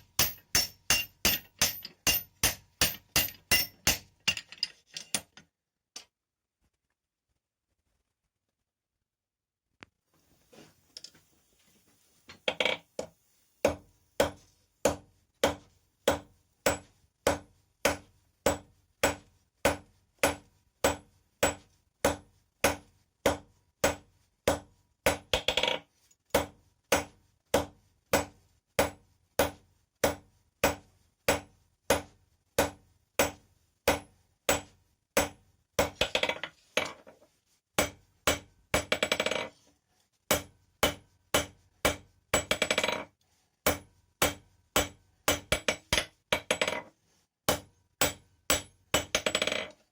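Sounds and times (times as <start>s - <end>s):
hammer striking steel on anvil: 0.0s - 4.5s, 37.8s - 38.9s, 40.3s - 42.6s, 43.7s - 46.1s, 47.5s - 49.4s.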